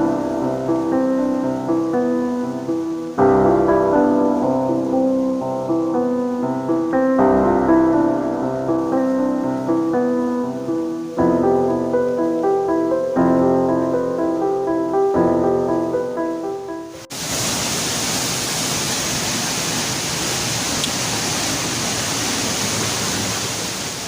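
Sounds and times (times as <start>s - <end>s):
piano chords: 0.0s - 17.2s.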